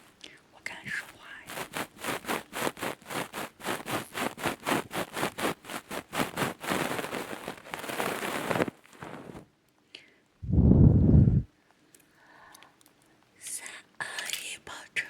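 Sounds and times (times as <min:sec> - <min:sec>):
scratching on microphone: 0:00.0 - 0:09.5.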